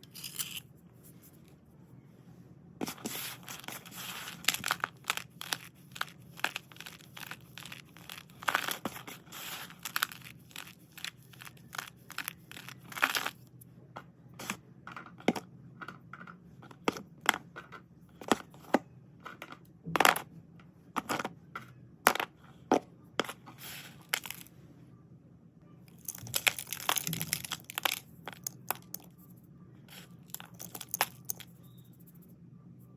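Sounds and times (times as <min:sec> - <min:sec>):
crunchy scraping of slate: 0:00.0 - 0:01.3, 0:02.8 - 0:13.4, 0:23.2 - 0:24.5, 0:25.9 - 0:29.1, 0:29.9 - 0:31.6
slate pieces clicking: 0:25.9 - 0:29.1, 0:29.9 - 0:31.6.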